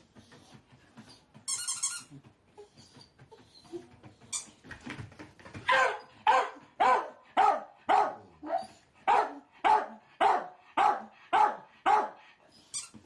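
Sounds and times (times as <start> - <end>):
dog barking: 5.7 - 12.2.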